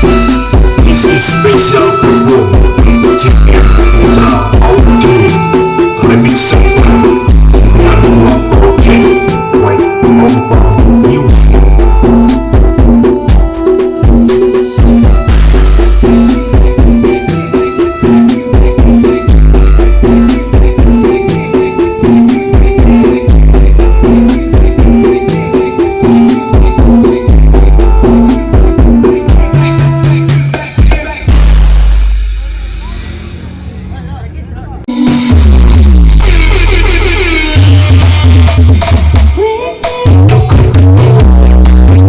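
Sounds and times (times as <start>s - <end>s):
loud dance music: 0.0s - 33.3s, 34.9s - 42.0s
deep bass pulses: 0.0s - 39.3s, 40.1s - 42.0s.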